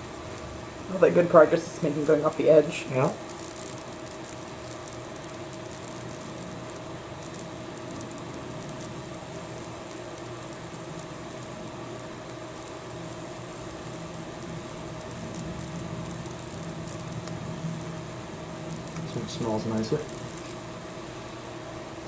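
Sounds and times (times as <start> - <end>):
electrical hum: 0.0 - 22.0
electrical sizzling and crackling: 0.0 - 22.0.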